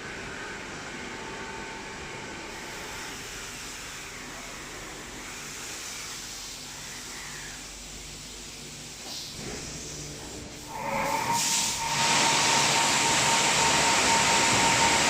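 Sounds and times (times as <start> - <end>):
car wash spray rushing: 10.7 - 15.0.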